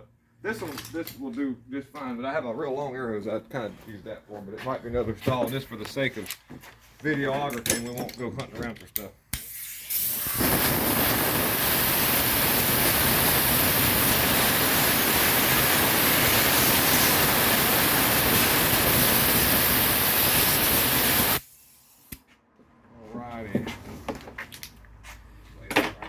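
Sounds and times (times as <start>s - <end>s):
compressed air hissing from blow gun: 9.4s - 22.2s.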